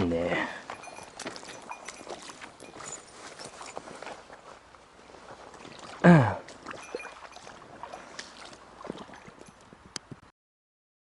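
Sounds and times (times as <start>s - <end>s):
stream running water: 0.0s - 10.2s
person grunting: 6.0s - 6.4s.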